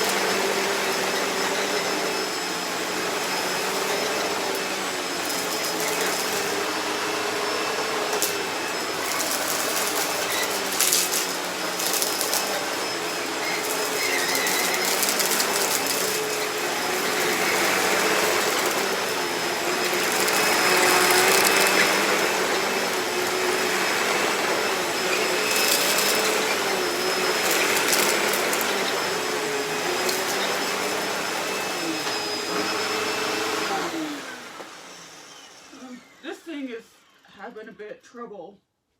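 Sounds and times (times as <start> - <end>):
upright vacuum cleaner running: 0.0 - 36.3
paper rattling in vacuum: 3.1 - 32.0.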